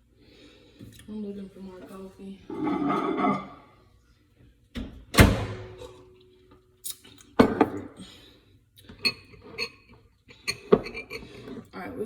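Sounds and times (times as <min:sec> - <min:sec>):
hard knocks in kitchen: 0:05.2 - 0:05.8.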